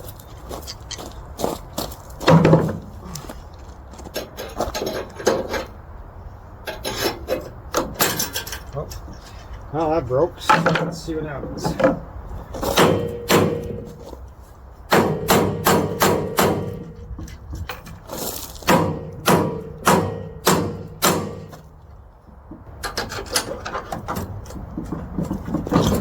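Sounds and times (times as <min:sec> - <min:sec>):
hammer striking steel: 0:12.8 - 0:14.0, 0:14.9 - 0:17.1, 0:18.7 - 0:21.7.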